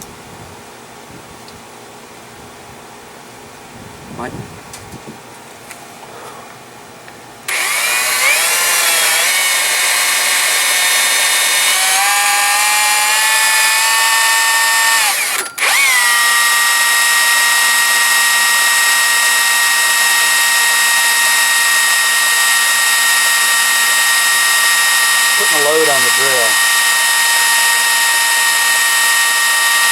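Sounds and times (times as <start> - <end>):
electric drill motor whine: 7.5 - 29.9.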